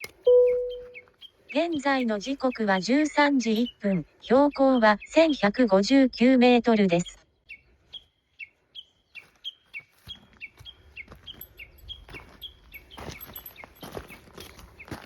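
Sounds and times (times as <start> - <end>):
bird chirping: 0.0 - 5.7
footsteps crunching on trail: 9.1 - 15.0.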